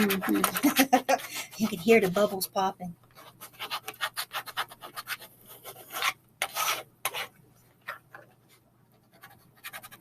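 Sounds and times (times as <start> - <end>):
tool scraping over vinyl tape: 3.2 - 8.3.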